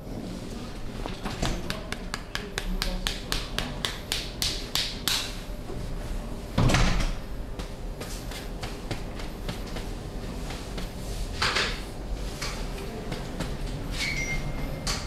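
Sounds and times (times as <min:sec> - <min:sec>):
percussive massage slaps: 0:01.4 - 0:05.4, 0:07.0 - 0:11.0.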